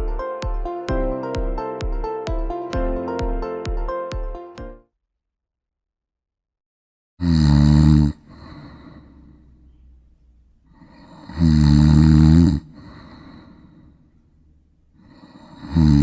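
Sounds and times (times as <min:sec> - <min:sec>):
person snoring loudly: 0:07.2 - 0:09.4, 0:10.7 - 0:13.8, 0:15.0 - 0:16.0
soft breathing: 0:08.1 - 0:11.5, 0:12.5 - 0:15.8.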